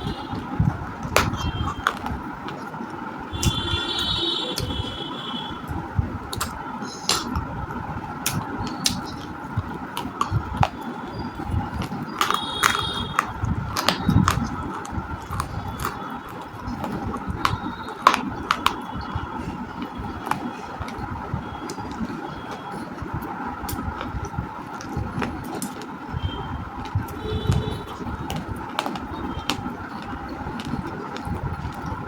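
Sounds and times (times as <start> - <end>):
crunching while chewing: 0.0 - 4.8, 6.3 - 21.0, 27.4 - 32.0
steady background hum: 0.0 - 32.0.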